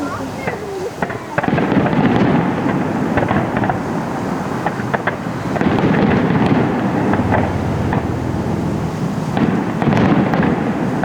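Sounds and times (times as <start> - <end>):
fireworks crackling and popping: 0.0 - 11.0
fireworks shells booming: 0.0 - 11.0
dense rumble: 5.3 - 10.0.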